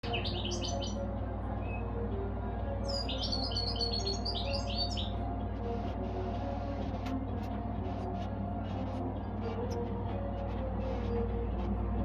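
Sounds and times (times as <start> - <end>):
finch twittering chirps: 0.0 - 1.0, 2.9 - 5.2
steady low hum: 0.0 - 12.0.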